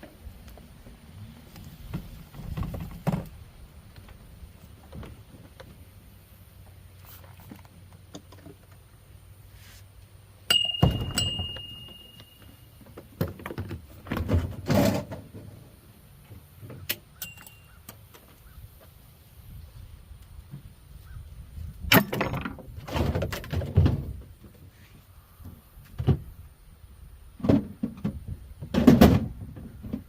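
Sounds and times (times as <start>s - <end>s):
ringing metal strike: 10.5s - 12.7s.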